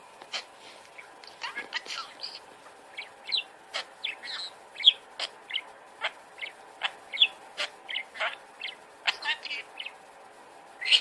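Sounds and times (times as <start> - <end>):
parrot chirping and squawking: 0.3 - 10.0, 10.8 - 11.0.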